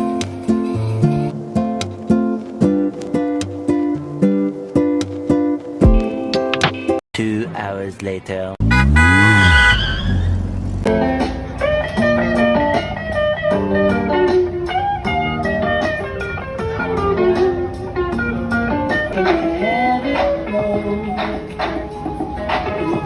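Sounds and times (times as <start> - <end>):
plucked guitar tune over a beat: 0.0 - 7.0, 10.9 - 21.8.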